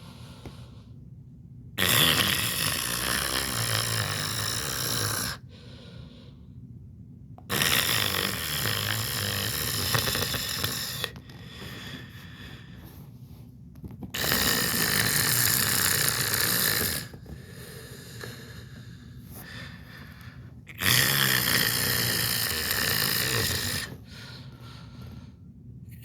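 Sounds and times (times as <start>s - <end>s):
quiet breath: 0.0s - 1.1s, 5.3s - 6.8s, 10.1s - 15.0s, 15.6s - 21.2s, 22.5s - 26.0s
person snoring: 1.8s - 6.1s, 7.5s - 12.9s, 14.1s - 25.0s.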